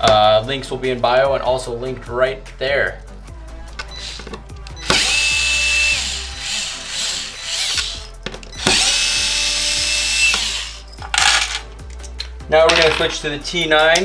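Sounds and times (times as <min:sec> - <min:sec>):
electric screwdriver whine: 0:03.9 - 0:10.8.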